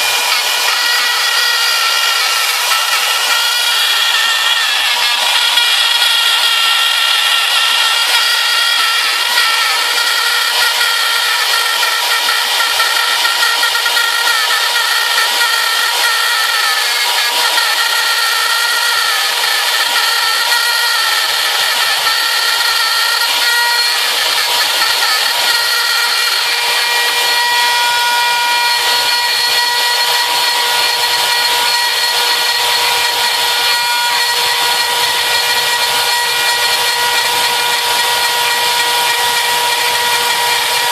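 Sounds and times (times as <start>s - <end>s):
spiral saw high-pitched whine: 0.0s - 40.9s.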